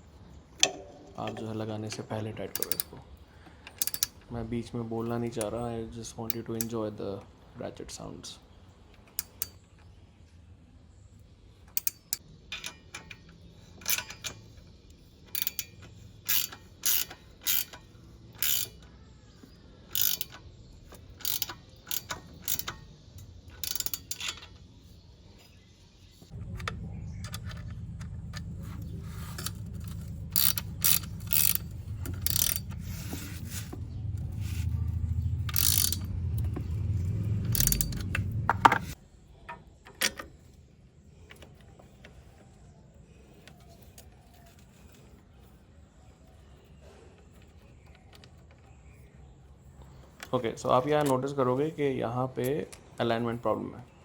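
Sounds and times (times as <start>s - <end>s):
ratchet wrench clicking: 2.5s - 2.9s, 3.7s - 4.3s, 11.7s - 18.9s, 19.9s - 24.6s, 26.6s - 39.0s
steady low hum: 25.5s - 39.0s.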